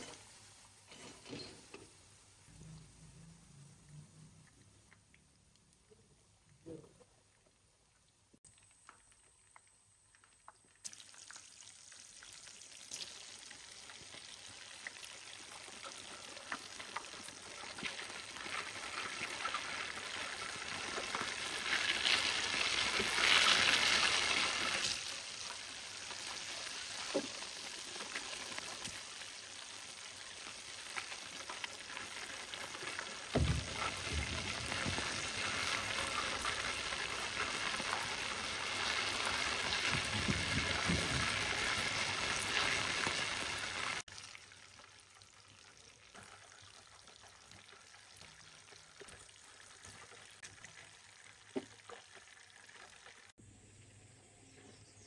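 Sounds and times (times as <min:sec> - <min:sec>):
food sizzling in a pan: 0:00.0 - 0:04.2, 0:10.8 - 0:53.4
low thump: 0:33.4 - 0:34.4.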